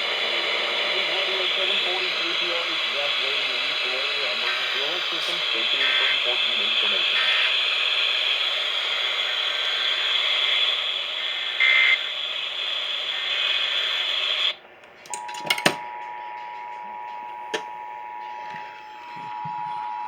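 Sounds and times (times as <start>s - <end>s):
radio hiss: 0.0s - 20.0s
clicks: 14.8s - 19.4s.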